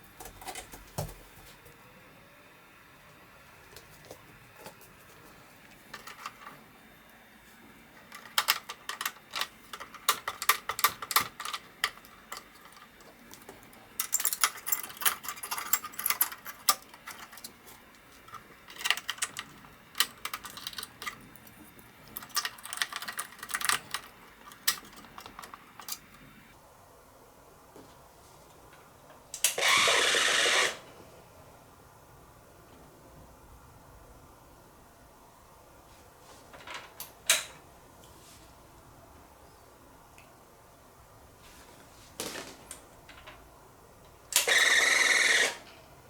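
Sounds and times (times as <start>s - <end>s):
small hard parts clicking and clattering: 5.6s - 6.8s, 7.9s - 26.4s.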